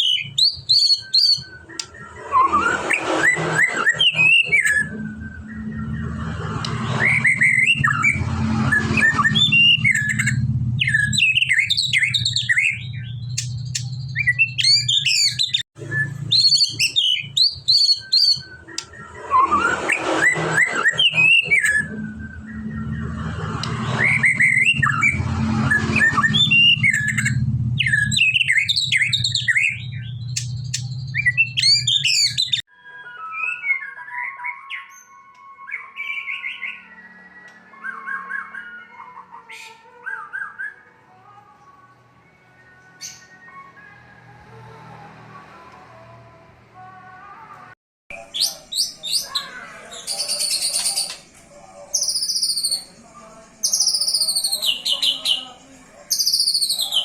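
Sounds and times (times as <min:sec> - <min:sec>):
bird singing whistles and chirps: 0:00.0 - 0:40.9, 0:52.0 - 0:53.0, 0:53.6 - 0:55.5, 0:56.1 - 0:57.0
steady low hum: 0:01.7 - 0:14.8, 0:21.4 - 0:31.6.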